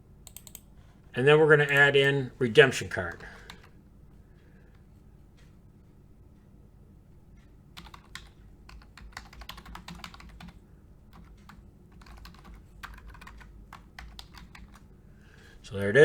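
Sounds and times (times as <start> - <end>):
keyboard typing: 0.2 - 0.7, 2.9 - 3.8, 7.8 - 14.9.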